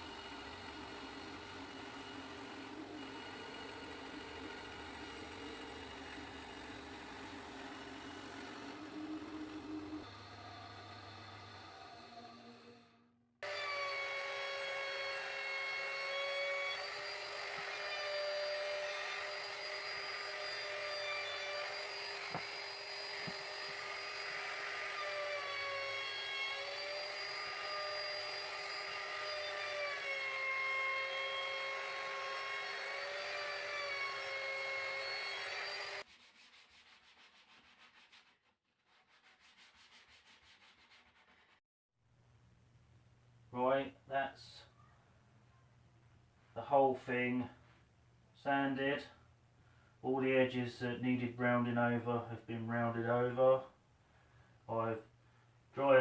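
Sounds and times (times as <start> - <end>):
orbital sander on wood: 0.0 - 12.2.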